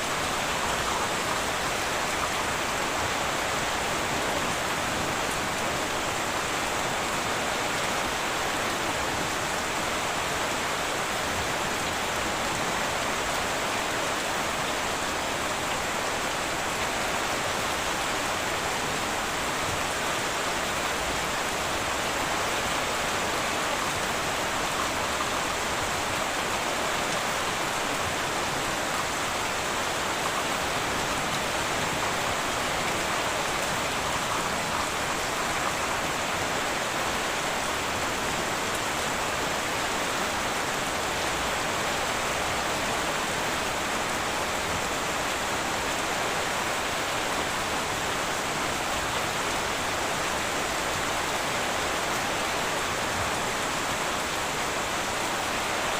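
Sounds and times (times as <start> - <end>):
heavy rain on a tin roof: 0.0 - 55.9.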